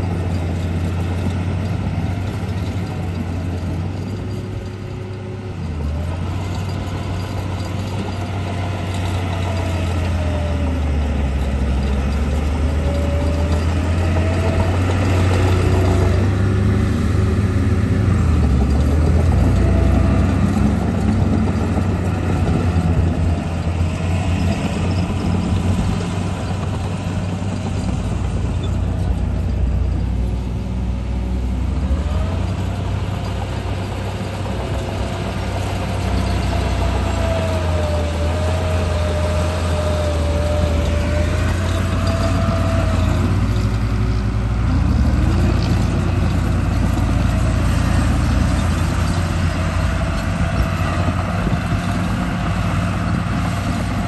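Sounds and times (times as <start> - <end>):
toy truck engine drone: 32.1 - 52.9.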